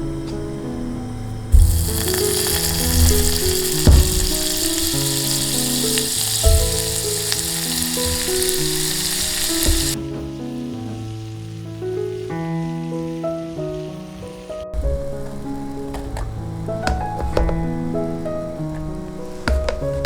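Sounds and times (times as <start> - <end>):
dull knocks: 1.5 - 5.4, 6.3 - 10.4, 14.8 - 20.0
food sizzling in a pan: 1.6 - 10.0.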